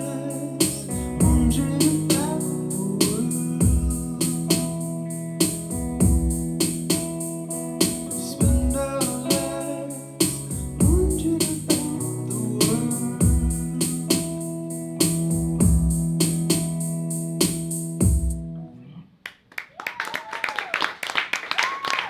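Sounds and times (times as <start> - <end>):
electric keyboard chords: 0.0 - 18.6
high ticks: 0.6 - 15.4
deep kick drum: 1.0 - 1.8, 3.6 - 4.2, 5.7 - 6.6, 8.4 - 8.9, 10.5 - 11.4, 13.2 - 13.8, 15.3 - 16.2, 18.0 - 18.4.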